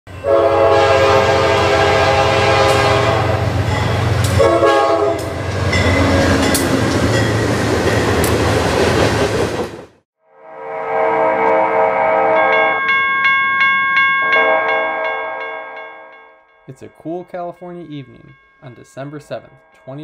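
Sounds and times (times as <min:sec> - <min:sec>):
train running by: 0:00.1 - 0:10.0
locomotive air horn blasts: 0:00.2 - 0:03.5, 0:04.4 - 0:05.4, 0:10.4 - 0:12.5.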